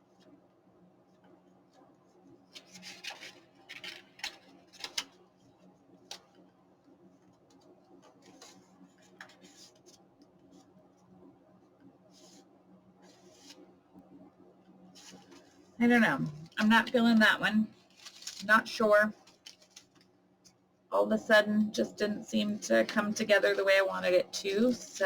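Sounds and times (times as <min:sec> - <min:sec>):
faint steady hum: 0:00.0 - 0:25.0
paper rustling and sliding: 0:02.5 - 0:05.2, 0:08.1 - 0:10.6, 0:13.0 - 0:13.6, 0:15.0 - 0:15.7, 0:17.8 - 0:20.0.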